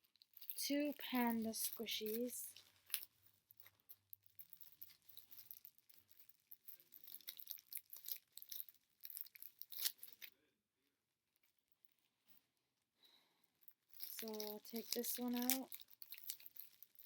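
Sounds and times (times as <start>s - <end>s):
packaging crinkling and rustling: 0.0s - 10.4s, 13.9s - 17.0s
small crackles and clicks: 0.0s - 10.4s, 13.6s - 17.0s.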